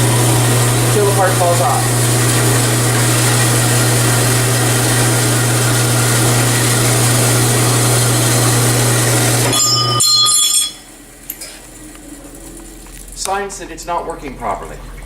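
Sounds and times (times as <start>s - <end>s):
bandsaw motor hum: 0.0s - 15.0s
short metallic ringing: 9.5s - 10.9s.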